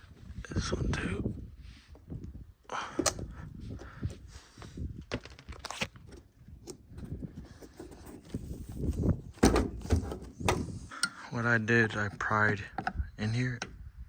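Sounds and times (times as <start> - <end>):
rustling handling noise: 3.0 - 10.9.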